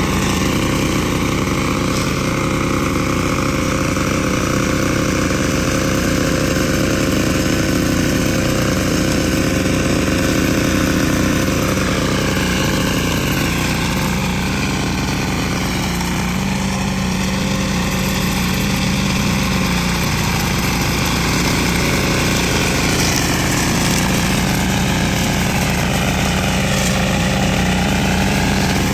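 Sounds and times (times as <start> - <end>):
diesel engine running: 0.0 - 28.9.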